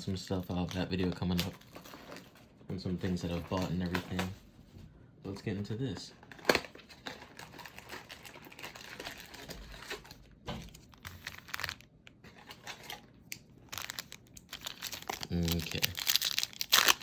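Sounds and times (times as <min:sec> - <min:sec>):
plastic wrapping crinkling and tearing: 0:00.2 - 0:02.4, 0:06.2 - 0:17.0.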